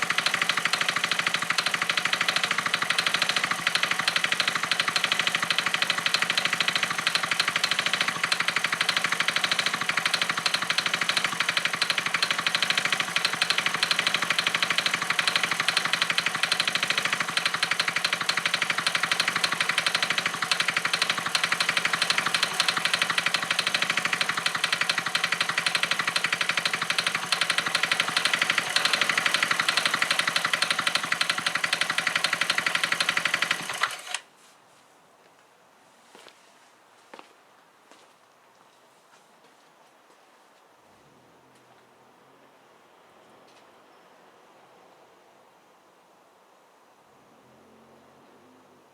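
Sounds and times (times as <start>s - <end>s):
fast even ticking: 0.0s - 34.2s
scooter engine idling: 0.0s - 34.2s.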